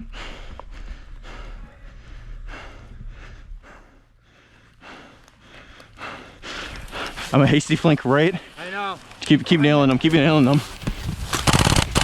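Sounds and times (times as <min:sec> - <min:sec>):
low steady rumble: 0:00.0 - 0:07.2
person breathing heavily: 0:00.0 - 0:07.4.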